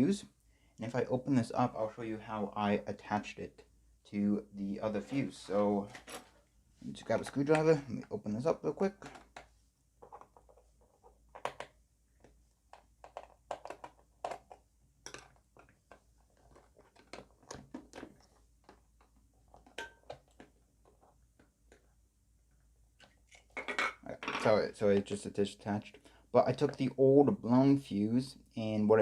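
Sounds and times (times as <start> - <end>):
plastic case being handled: 8.9 - 21.9.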